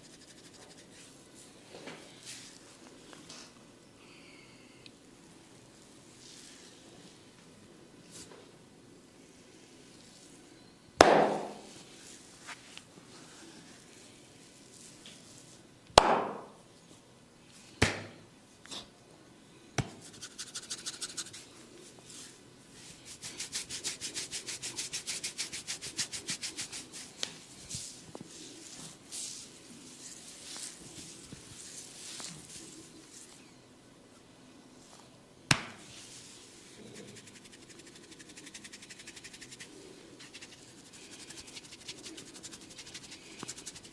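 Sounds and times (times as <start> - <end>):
fast rubbing and patting on hair: 0.0 - 1.2, 20.0 - 21.5, 22.1 - 33.3, 35.9 - 43.9.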